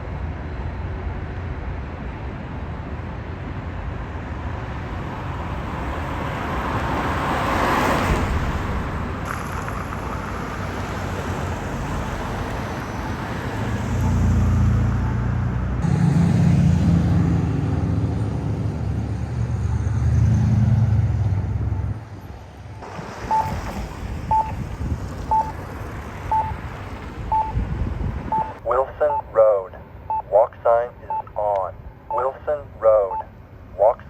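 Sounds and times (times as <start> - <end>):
short high electronic beep: 9.3 - 11.4, 23.3 - 23.6, 24.3 - 24.5, 25.3 - 25.5, 27.3 - 27.5, 28.3 - 29.3.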